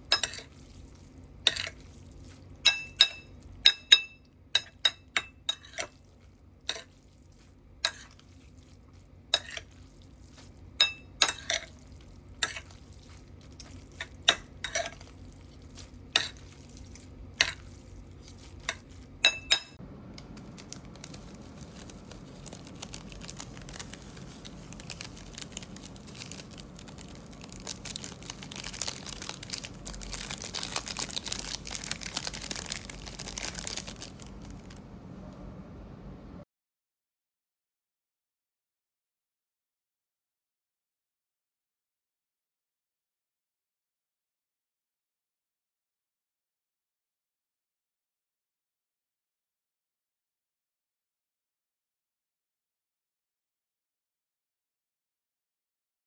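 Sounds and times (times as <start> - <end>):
utensil clinking against dish: 0.0 - 0.6, 1.5 - 1.9, 2.6 - 6.0, 9.4 - 9.8, 10.8 - 11.8, 16.1 - 16.6, 18.4 - 19.8.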